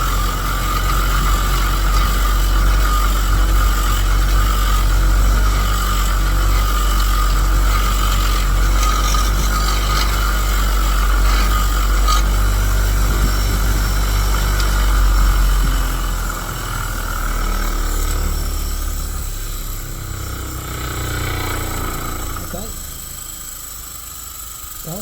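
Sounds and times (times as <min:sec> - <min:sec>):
wire bristles scratching metal: 0:00.0 - 0:16.6
bench grinder motor whine: 0:00.0 - 0:25.0.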